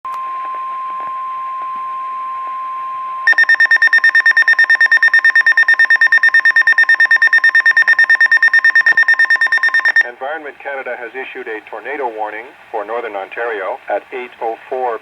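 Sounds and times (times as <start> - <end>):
rapid beeping alarm: 3.2 - 10.0
radio hiss: 10.0 - 15.0.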